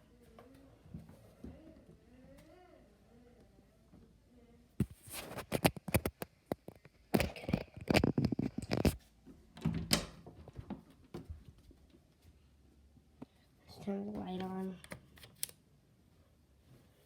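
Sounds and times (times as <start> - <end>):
scraping handling noises: 4.8 - 9.0.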